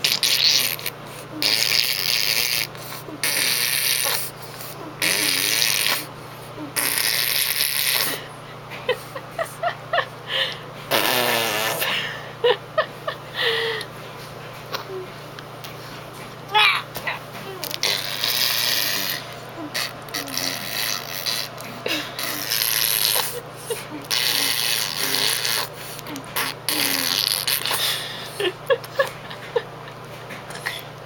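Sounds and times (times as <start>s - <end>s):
baby blowing raspberries: 0.0s - 8.3s, 10.9s - 12.2s, 17.4s - 28.5s
baby squealing: 16.5s - 16.9s.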